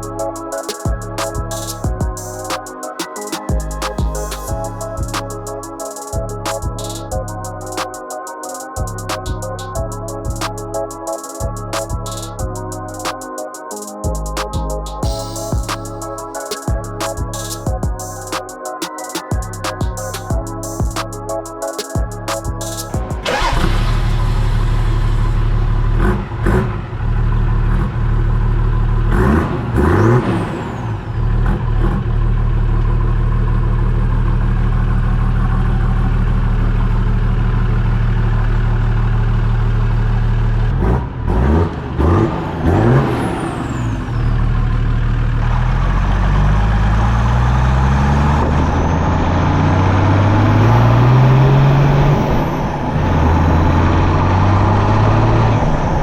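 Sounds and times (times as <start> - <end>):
diesel engine revving: 23.2 - 28.2, 40.7 - 56.0.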